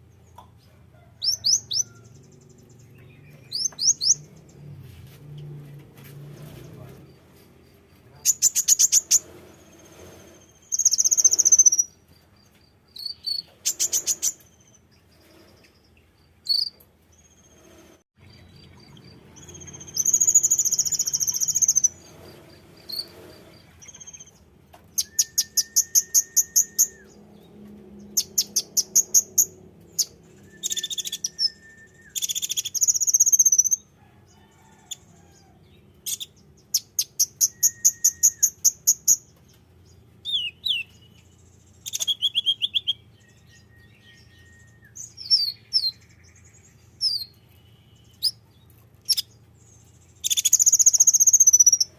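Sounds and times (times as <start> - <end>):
sunbird high sharp chirps: 1.2 - 4.4, 7.6 - 12.2, 12.9 - 33.9, 36.0 - 39.3, 40.2 - 51.9
buzzy bird trills: 7.4 - 12.2, 16.5 - 33.9, 36.0 - 39.3, 40.2 - 51.9.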